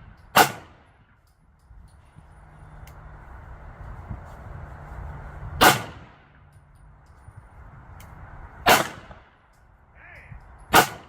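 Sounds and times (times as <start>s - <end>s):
pistol shots with echo: 0.3s - 1.0s, 5.6s - 6.1s, 8.6s - 9.3s, 10.7s - 11.0s.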